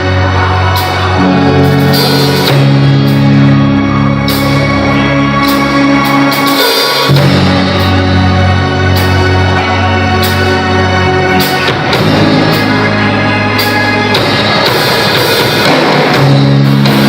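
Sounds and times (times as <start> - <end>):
band playing live: 0.0 - 17.0.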